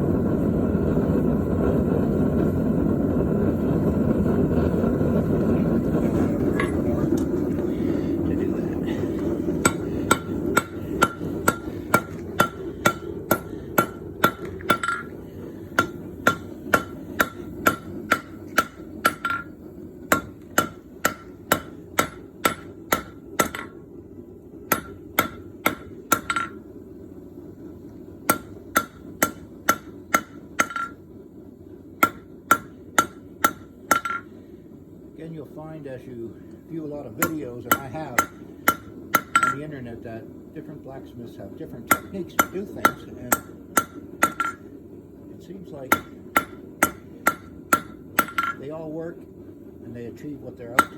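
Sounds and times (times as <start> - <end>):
steady low hum: 0.0 - 50.9
hammer ringing on anvil: 9.6 - 15.2, 15.8 - 19.5, 24.7 - 26.6, 28.3 - 31.0, 32.0 - 34.3, 37.2 - 39.6, 41.9 - 44.7, 45.9 - 48.6.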